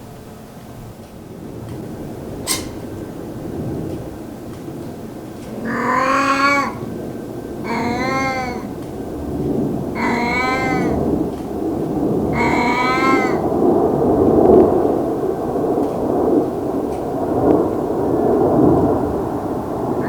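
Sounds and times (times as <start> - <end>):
cat meowing: 5.5 - 8.8, 9.8 - 11.3, 12.2 - 13.6.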